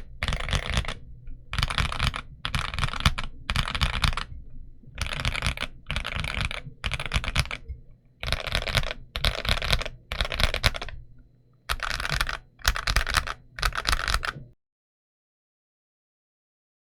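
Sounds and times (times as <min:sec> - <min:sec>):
typing on mechanical keyboard: 0:00.0 - 0:04.4, 0:05.0 - 0:11.0, 0:11.7 - 0:14.6.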